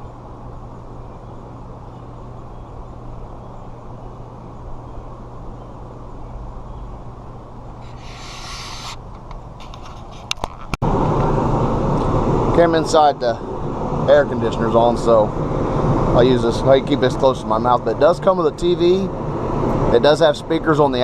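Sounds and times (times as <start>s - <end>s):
rooftop air conditioner humming: 0.0s - 9.7s, 10.9s - 21.0s
brief hiss: 7.8s - 9.0s.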